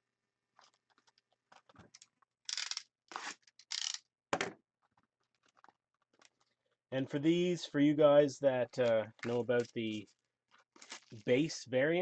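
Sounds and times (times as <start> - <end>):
packaging crinkling and tearing: 8.8 - 11.5.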